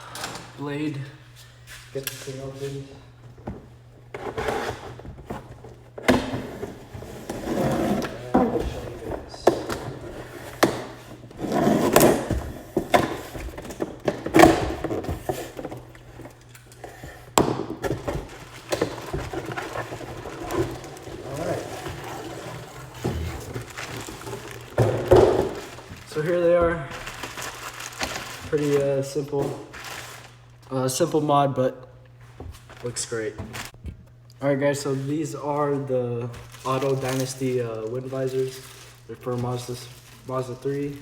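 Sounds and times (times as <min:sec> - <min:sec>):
steady low hum: 0:00.0 - 0:41.0
blade cutting cardboard box: 0:09.8 - 0:13.4
rustling: 0:18.2 - 0:28.9.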